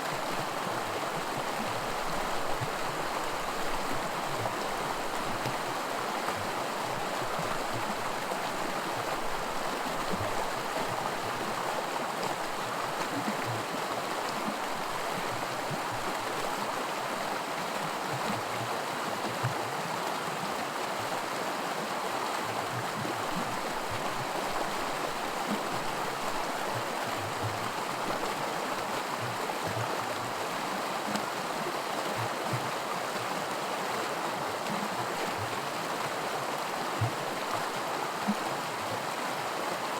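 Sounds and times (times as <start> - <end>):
creek running over rocks: 0.0 - 39.9.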